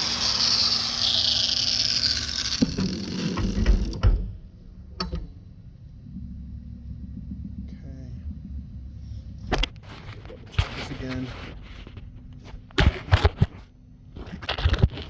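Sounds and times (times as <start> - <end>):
power cutting tool winding down: 0.0 - 4.0.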